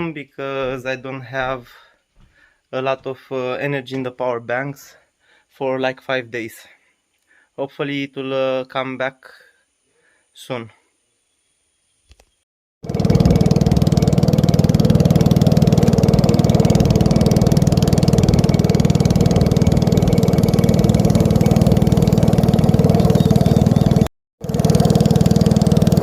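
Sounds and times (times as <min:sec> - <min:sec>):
small engine running steadily: 0:12.8 - 0:26.0.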